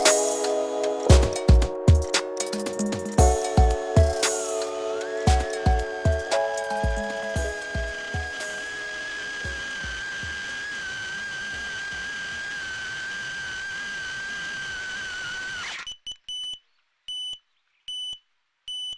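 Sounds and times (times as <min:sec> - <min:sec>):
quadcopter motors whining: 0:09.2 - 0:15.9.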